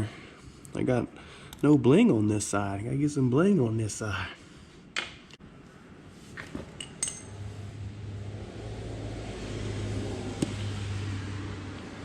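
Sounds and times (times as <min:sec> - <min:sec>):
metallic clinks of tools: 0:06.8 - 0:07.4.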